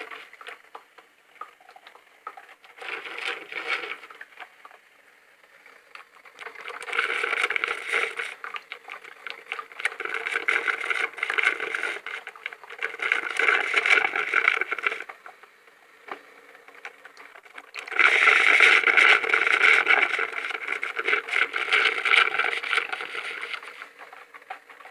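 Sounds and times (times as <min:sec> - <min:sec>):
coffee machine crackling: 0:05.9 - 0:15.4, 0:16.7 - 0:24.9.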